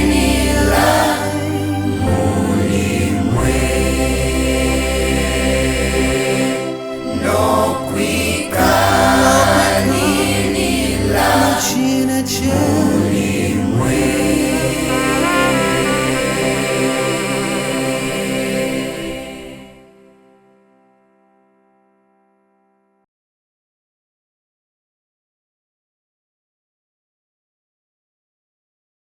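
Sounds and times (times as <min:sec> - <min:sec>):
gospel choir singing: 0:00.0 - 0:20.2
held bass notes: 0:08.5 - 0:18.8.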